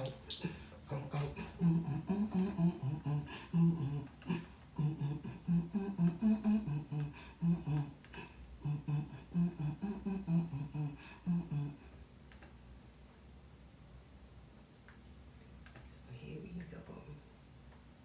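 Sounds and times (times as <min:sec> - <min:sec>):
woman making hummed vocal beat: 0:00.0 - 0:12.0.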